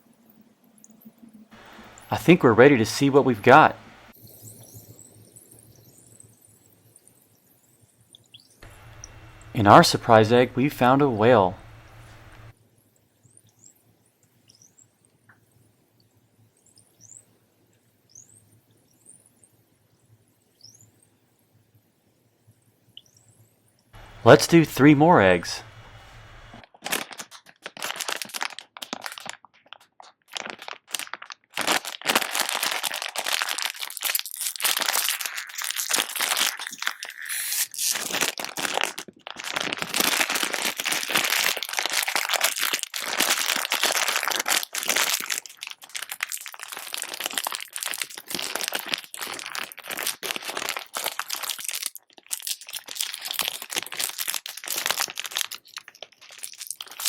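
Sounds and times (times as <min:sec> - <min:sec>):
packaging wrappers crinkling: 0:26.6 - 0:57.0.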